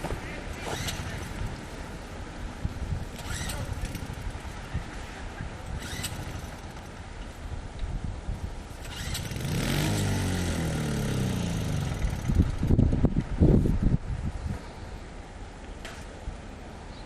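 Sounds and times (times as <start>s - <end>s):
engine running: 8.7s - 13.4s.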